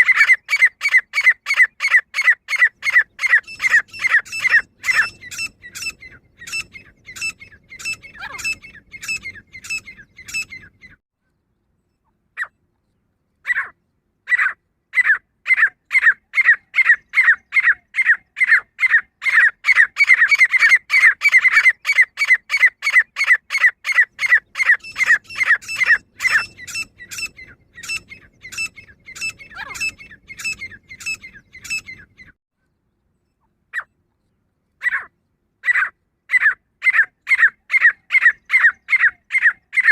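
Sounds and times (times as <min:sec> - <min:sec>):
francolin calling: 0:00.0 - 0:11.0, 0:14.3 - 0:32.4.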